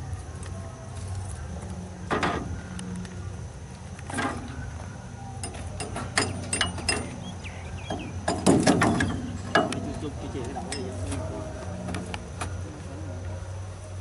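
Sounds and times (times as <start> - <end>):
steady low hum: 0.0 - 14.0
metallic clicks and clanks: 5.4 - 7.2.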